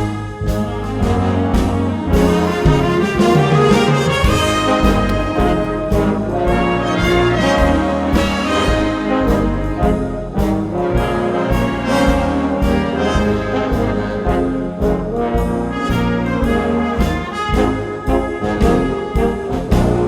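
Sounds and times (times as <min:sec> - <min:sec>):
brass wind band playing: 0:00.0 - 0:20.0
trombones and trumpets: 0:00.0 - 0:20.0
percussion hits: 0:00.5 - 0:08.9.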